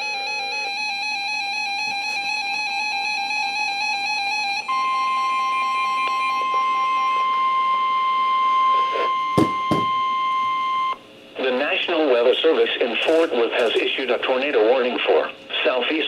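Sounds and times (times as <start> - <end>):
weather radio warning alarm tone: 0.0 - 11.5.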